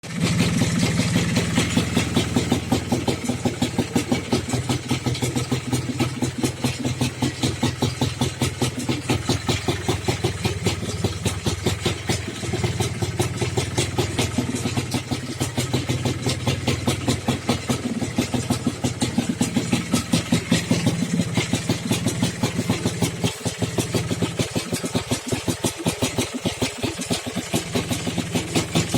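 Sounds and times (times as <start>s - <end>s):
engine idling: 0.0s - 28.9s.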